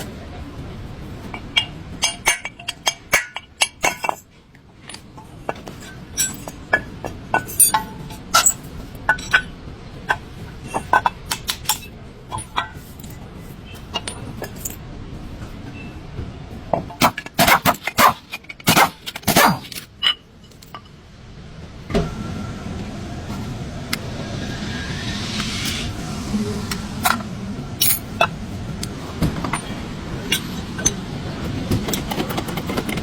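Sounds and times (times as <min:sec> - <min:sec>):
metal tools clinking: 0:01.6 - 0:04.2, 0:04.8 - 0:09.5
low steady hum: 0:18.3 - 0:33.0.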